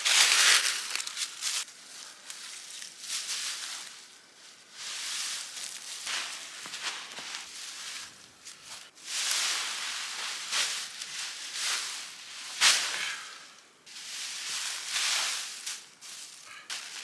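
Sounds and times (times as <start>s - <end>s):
dry leaves rustling and crackling: 0.0s - 17.0s.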